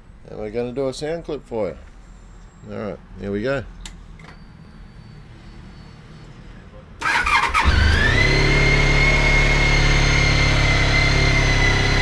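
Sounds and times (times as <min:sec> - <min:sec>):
starter motor cranking: 0:07.0 - 0:12.0.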